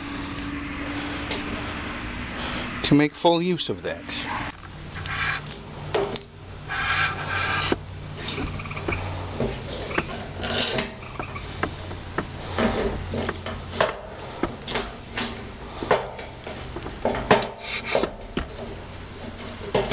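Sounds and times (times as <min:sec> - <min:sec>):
insects chirping: 0:00.0 - 0:19.9
metal parts clicking and rattling: 0:09.5 - 0:17.6.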